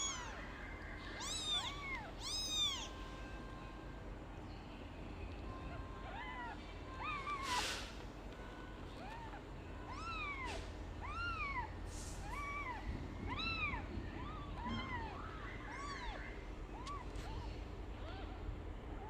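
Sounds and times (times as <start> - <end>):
kittens mewing: 0.0 - 3.4, 5.6 - 8.0, 9.0 - 19.0.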